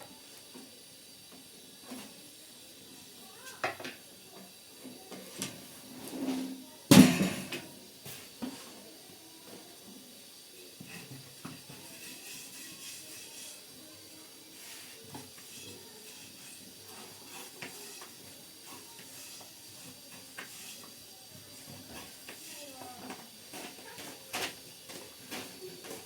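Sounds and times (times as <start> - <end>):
steady hiss: 0.0 - 26.0
cooking utensils clattering: 6.0 - 7.7.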